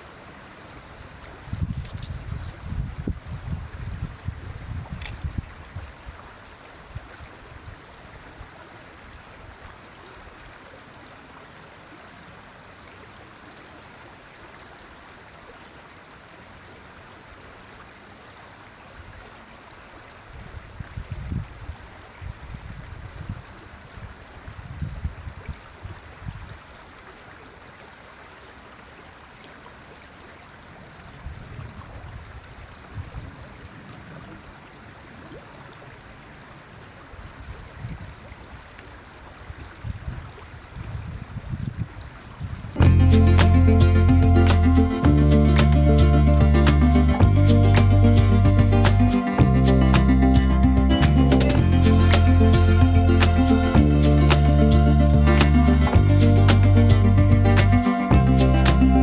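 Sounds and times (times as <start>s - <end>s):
wind buffeting microphone: 1.5s - 5.9s
river water rushing: 42.8s - 59.0s.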